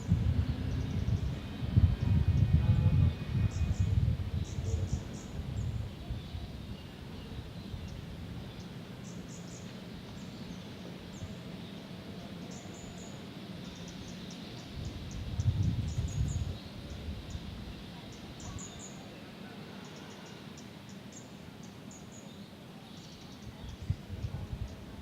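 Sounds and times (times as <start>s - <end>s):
low rumble: 0.0s - 6.2s
steady low hum: 0.0s - 18.6s.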